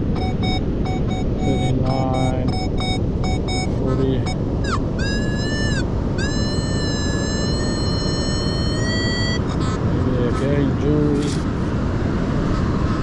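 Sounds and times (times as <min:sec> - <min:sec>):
metal detector beeps and tones: 0:00.0 - 0:11.5
wind and surf: 0:00.0 - 0:13.0.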